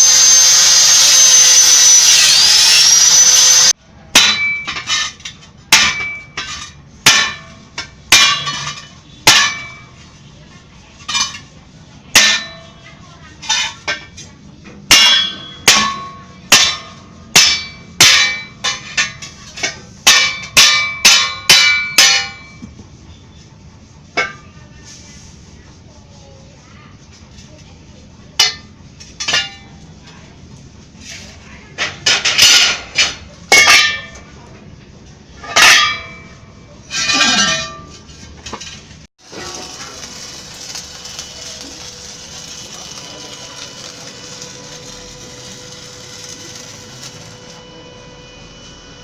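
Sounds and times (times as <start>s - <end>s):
loud power tool noise: 0.0s - 3.8s, 39.2s - 49.0s
hammer striking steel: 0.0s - 10.0s, 11.0s - 12.9s, 14.9s - 22.8s, 28.4s - 29.8s, 31.8s - 34.4s, 35.4s - 38.0s, 38.6s - 49.0s.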